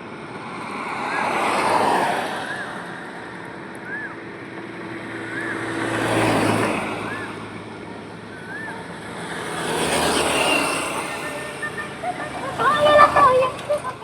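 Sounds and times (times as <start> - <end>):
vehicles passing close by: 0.0 - 14.0.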